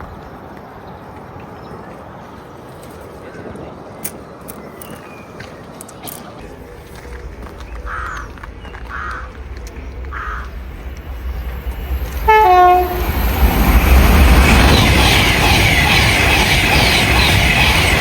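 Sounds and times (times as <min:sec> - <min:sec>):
train passing at speed: 0:00.0 - 0:18.0
two-tone train horn: 0:12.1 - 0:13.2.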